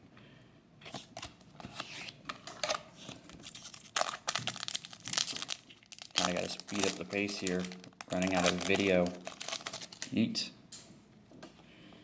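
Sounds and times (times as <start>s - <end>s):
foil wrapper crinkling and tearing: 2.6s - 10.2s.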